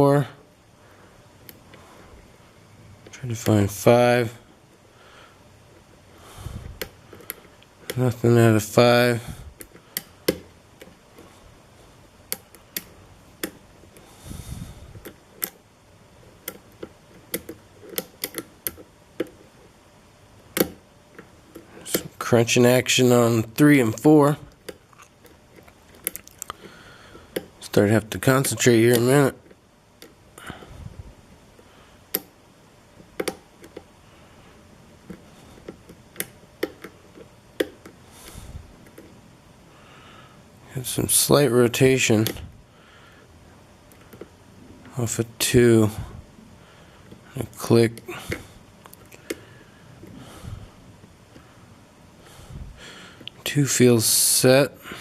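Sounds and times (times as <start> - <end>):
lock pick clicking on pins: 16.4 - 19.4.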